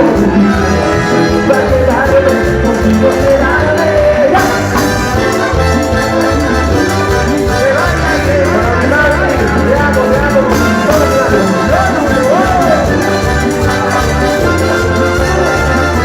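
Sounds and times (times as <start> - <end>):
band playing dance music: 0.0 - 16.0.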